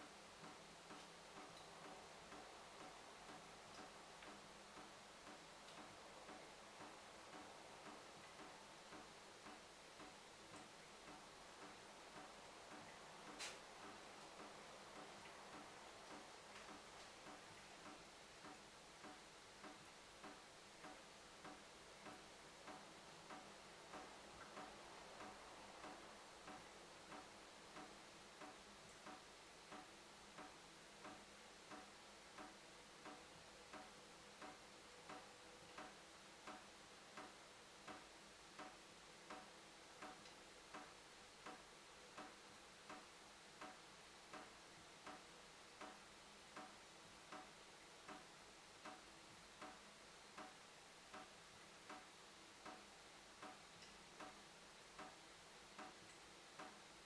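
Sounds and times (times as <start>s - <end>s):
tap dripping water: 0.4s - 35.2s, 42.2s - 45.2s, 50.4s - 51.3s, 51.9s - 52.8s, 53.4s - 54.4s, 55.0s - 55.2s.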